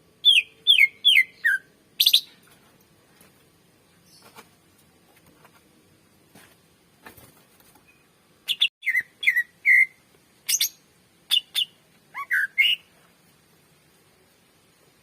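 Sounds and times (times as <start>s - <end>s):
bird whistling song: 0.2s - 2.3s, 7.9s - 12.9s.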